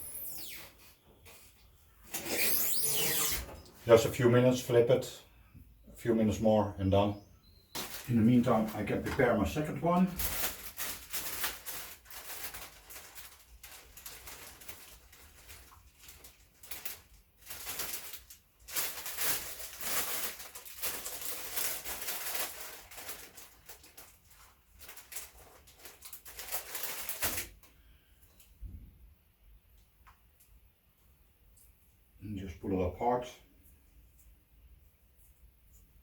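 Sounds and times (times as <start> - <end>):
hands rustling packaging: 7.8 - 27.7.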